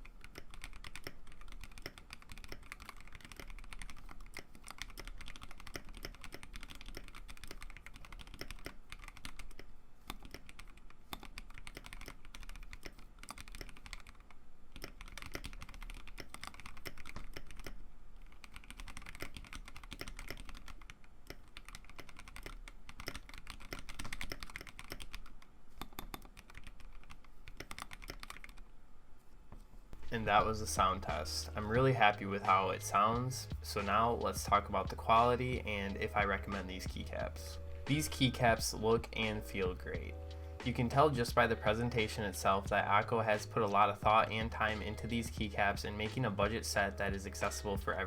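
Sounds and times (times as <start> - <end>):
mechanical keyboard typing: 0.0 - 28.6.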